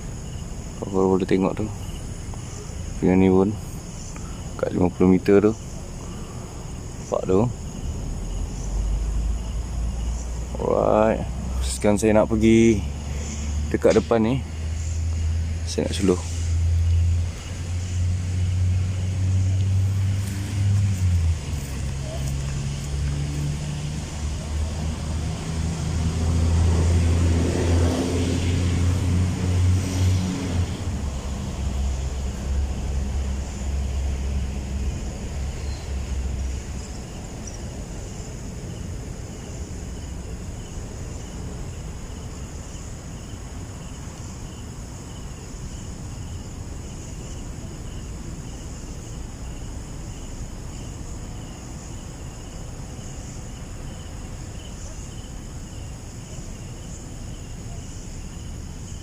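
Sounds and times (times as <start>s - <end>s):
night insects trilling: 0.0s - 59.0s
outdoor hiss: 0.0s - 59.0s
vehicle engine humming: 0.0s - 59.0s.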